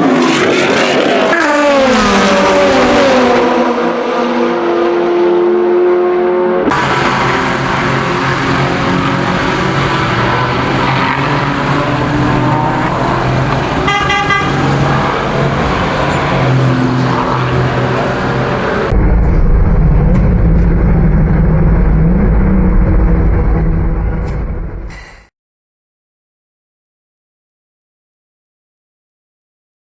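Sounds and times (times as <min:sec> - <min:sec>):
race car engine: 0:00.0 - 0:25.1
horn-like tone: 0:06.7 - 0:18.9.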